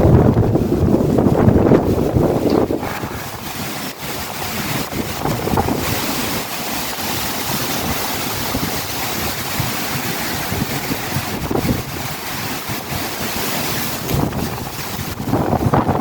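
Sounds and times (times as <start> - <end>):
strong wind buffeting microphone: 0.0 - 16.0.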